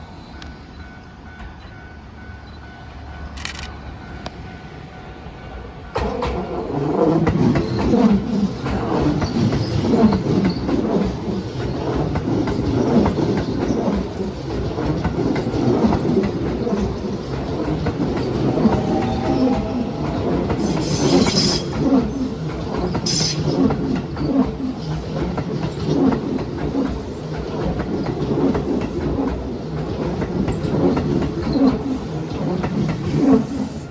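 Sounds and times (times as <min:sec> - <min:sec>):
train rumble: 0:00.0 - 0:33.9
train wheels clacking over rail joints: 0:05.9 - 0:33.5
crossing warning bell ringing: 0:15.2 - 0:22.7.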